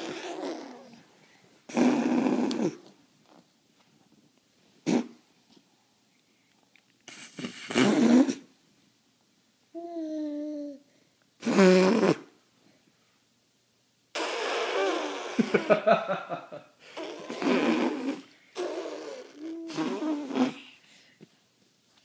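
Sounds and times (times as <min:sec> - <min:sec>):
raspy buzzing and snorting mouth noises: 0:14.1 - 0:15.7, 0:16.9 - 0:20.7
person humming: 0:16.9 - 0:20.7.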